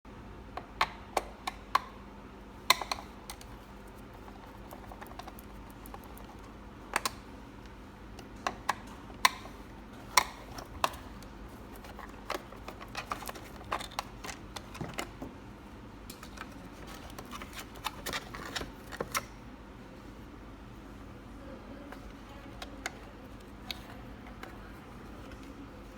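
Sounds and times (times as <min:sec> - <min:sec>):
faint steady hum: 0:00.1 - 0:25.9
plastic parts clicking and tapping: 0:02.7 - 0:15.4, 0:21.9 - 0:24.6.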